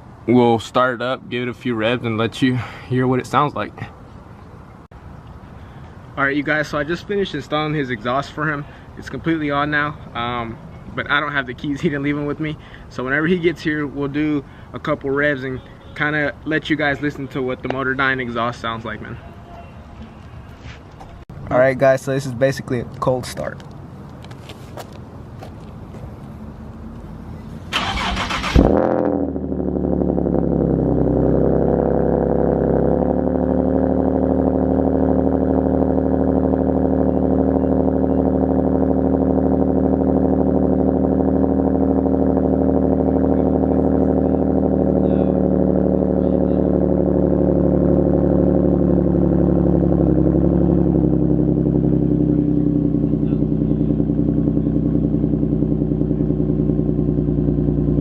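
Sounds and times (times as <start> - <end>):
car engine revving and idling: 25.8 - 58.0.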